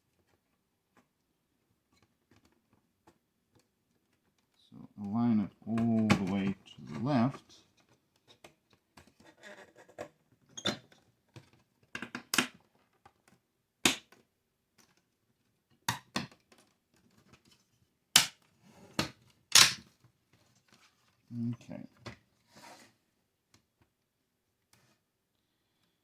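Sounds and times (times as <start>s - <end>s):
plastic parts clicking and knocking: 7.8s - 17.6s, 18.2s - 20.0s.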